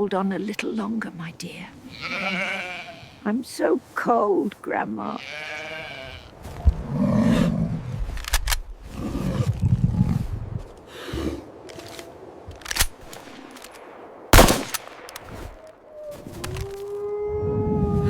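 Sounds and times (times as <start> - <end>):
rifle shots: 12.8 - 15.8.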